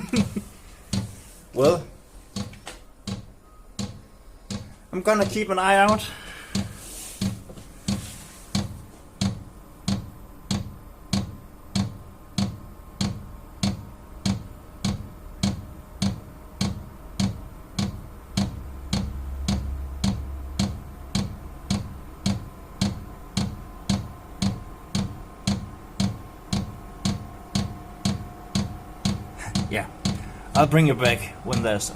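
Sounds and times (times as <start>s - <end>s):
blower fan whine: 0.0s - 31.9s
fuel pump ticking: 2.3s - 31.9s
low hum: 9.5s - 31.9s.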